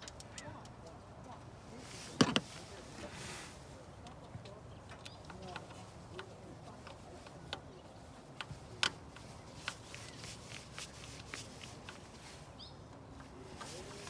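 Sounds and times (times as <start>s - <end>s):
clicks and knocks of tools: 0.0s - 0.8s.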